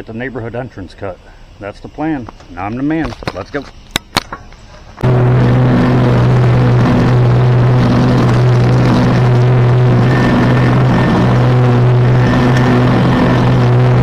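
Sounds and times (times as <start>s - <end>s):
small gasoline engine running: 5.0s - 14.0s.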